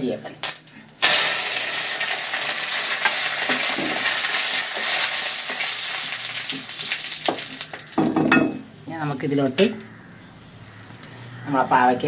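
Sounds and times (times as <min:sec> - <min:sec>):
leaves sizzling in hot oil: 0:00.0 - 0:08.1.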